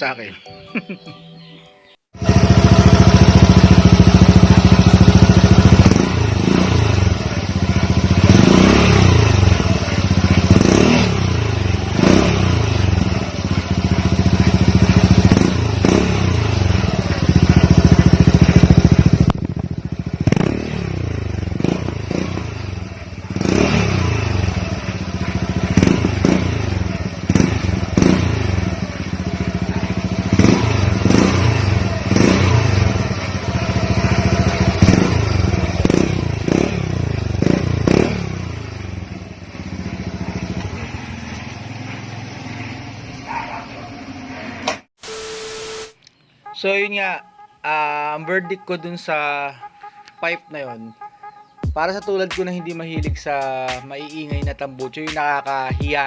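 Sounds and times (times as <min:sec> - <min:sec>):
scooter engine revving: 0:02.2 - 0:45.9.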